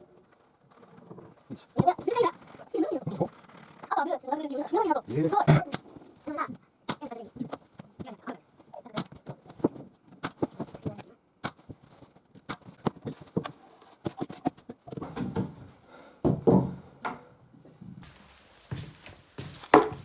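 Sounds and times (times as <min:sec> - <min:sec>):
small objects tapping and knocking: 0:19.6 - 0:20.0.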